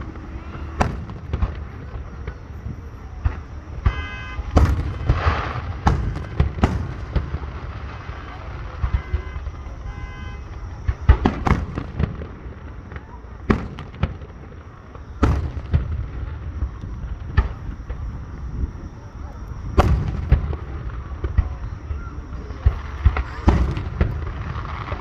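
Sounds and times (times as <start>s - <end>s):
fireworks booming: 0.0s - 25.0s.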